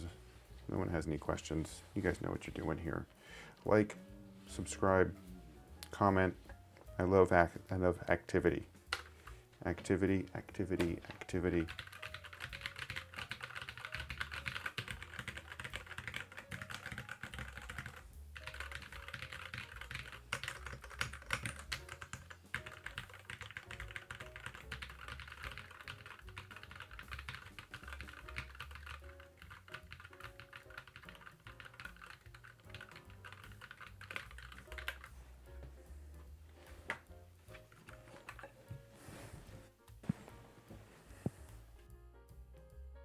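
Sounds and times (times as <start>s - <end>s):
background music: 0.0s - 43.0s
mechanical keyboard typing: 11.1s - 35.1s.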